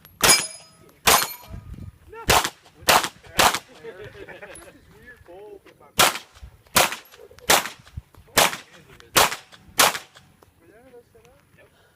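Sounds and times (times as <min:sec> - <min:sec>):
pistol shots: 0:00.2 - 0:01.5, 0:02.3 - 0:03.7, 0:06.0 - 0:10.2.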